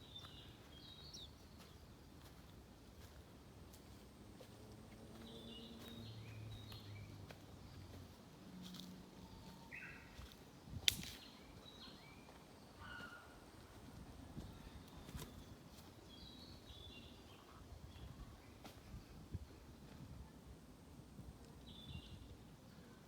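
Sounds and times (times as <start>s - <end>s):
songbirds chirping: 0.0s - 23.0s
sharp snap: 10.8s - 11.3s.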